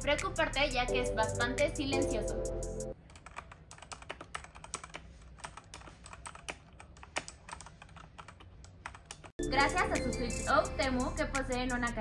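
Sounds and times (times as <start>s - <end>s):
mechanical keyboard typing: 3.0s - 9.3s.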